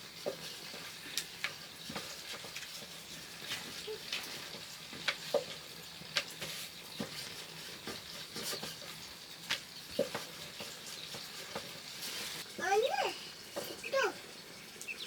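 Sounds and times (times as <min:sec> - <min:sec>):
hot oil sizzling: 0:00.0 - 0:15.0.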